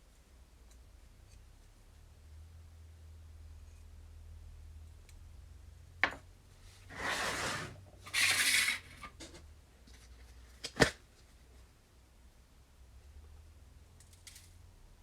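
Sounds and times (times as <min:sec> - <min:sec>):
tool scraping strokes: 0:06.9 - 0:09.4.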